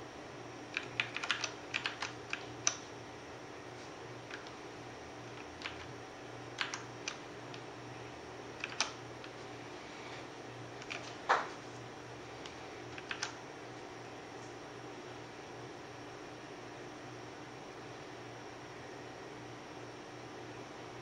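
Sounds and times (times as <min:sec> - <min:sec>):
mechanical keyboard key clacks: 0:00.7 - 0:02.8, 0:06.6 - 0:07.6, 0:08.6 - 0:09.0, 0:12.9 - 0:13.4.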